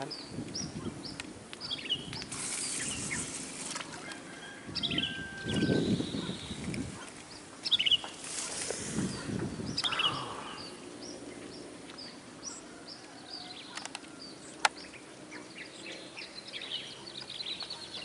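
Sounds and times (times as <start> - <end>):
small birds chirping: 0.0 - 18.0
hissing rustling noise: 2.1 - 4.4, 6.4 - 9.9.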